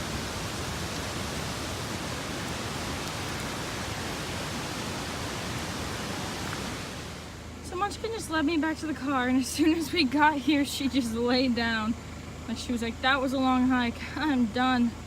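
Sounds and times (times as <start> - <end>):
waterfall rushing: 0.0 - 7.4.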